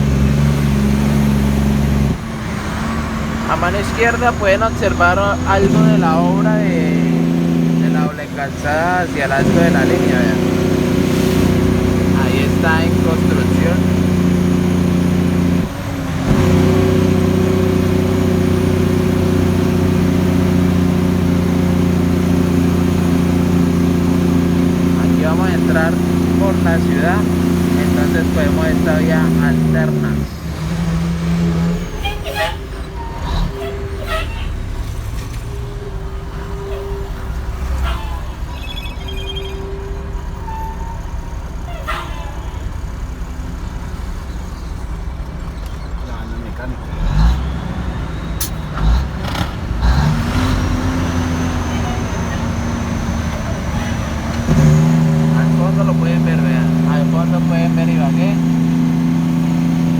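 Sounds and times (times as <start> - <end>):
truck diesel engine running: 0.0 - 59.9.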